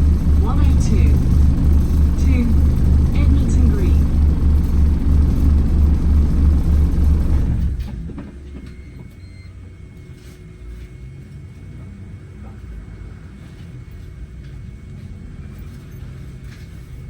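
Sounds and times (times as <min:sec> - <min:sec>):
low hum: 0:00.0 - 0:08.2
bus diesel engine rumble: 0:00.0 - 0:17.0.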